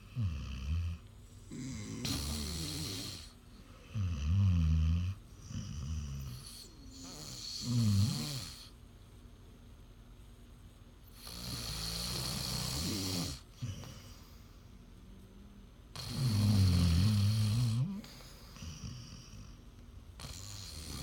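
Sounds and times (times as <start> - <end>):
low-pitched snoring: 0.0 - 8.7, 11.2 - 14.3, 15.9 - 19.6, 20.2 - 21.0.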